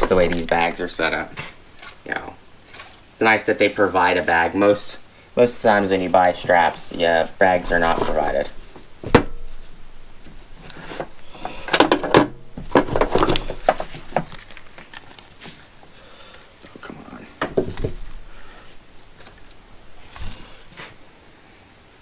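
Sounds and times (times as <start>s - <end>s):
bag rustling: 0.0s - 21.0s.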